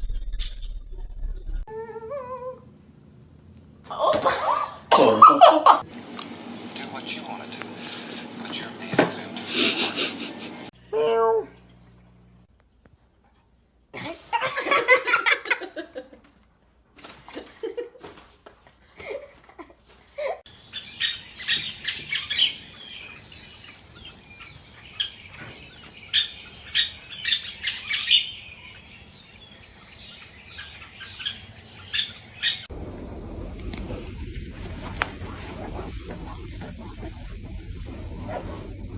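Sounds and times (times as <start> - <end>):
birds chirping: 20.5 - 32.7
low rumbling noise: 32.7 - 38.9.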